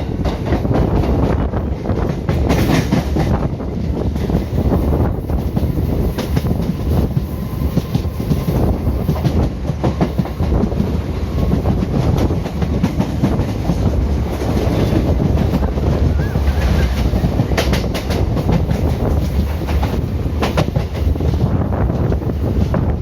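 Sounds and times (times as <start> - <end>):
train rumbling on track: 0.0 - 23.0
wheels clicking over rail joints: 7.8 - 22.7.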